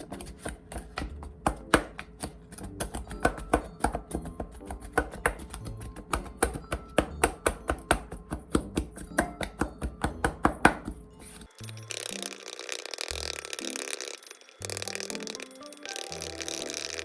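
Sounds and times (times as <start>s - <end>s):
knife chopping on a board: 0.0s - 11.0s.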